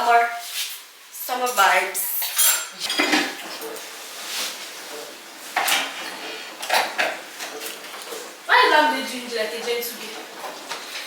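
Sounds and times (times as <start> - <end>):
dishes and cutlery clattering: 1.5 - 3.8, 4.8 - 8.3.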